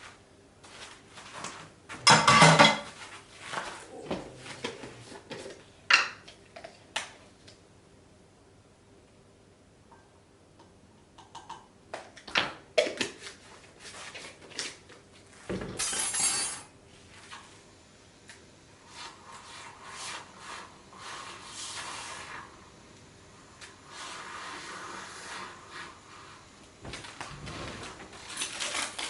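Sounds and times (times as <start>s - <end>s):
dishes and utensils clinking: 2.1s - 3.0s, 15.8s - 16.7s.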